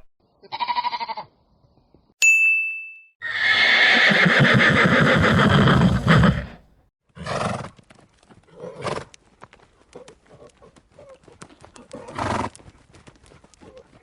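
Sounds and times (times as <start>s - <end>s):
loud drawn-out animal call: 3.2s - 6.6s
horse calls: 3.2s - 7.5s
hooves clip-clopping: 7.4s - 14.0s.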